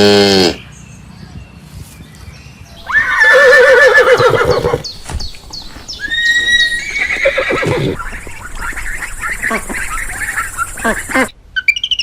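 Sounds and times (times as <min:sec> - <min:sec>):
horse neighing: 0:02.8 - 0:04.9, 0:06.0 - 0:11.3.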